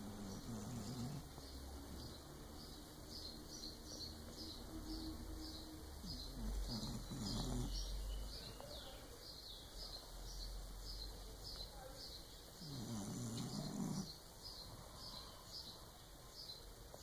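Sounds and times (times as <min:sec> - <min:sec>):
dog snoring: 0:00.0 - 0:01.4, 0:06.0 - 0:07.9, 0:12.6 - 0:14.2
bird chirping: 0:00.0 - 0:17.0.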